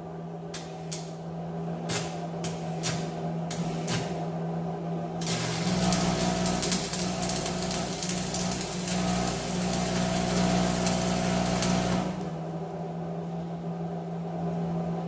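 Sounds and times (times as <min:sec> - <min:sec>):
low electrical hum: 0:00.0 - 0:15.0
welding arc crackling: 0:01.9 - 0:04.2, 0:05.2 - 0:12.4.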